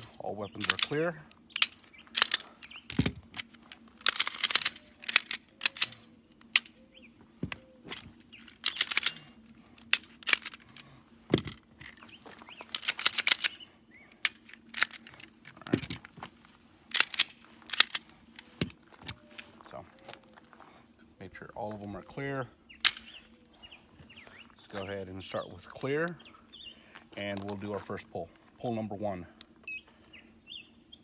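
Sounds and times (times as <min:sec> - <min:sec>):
metal parts clicking: 0:00.0 - 0:16.3, 0:16.9 - 0:20.4, 0:22.8 - 0:23.3
pistol slides racking: 0:00.0 - 0:16.3, 0:16.9 - 0:19.4, 0:22.8 - 0:23.2.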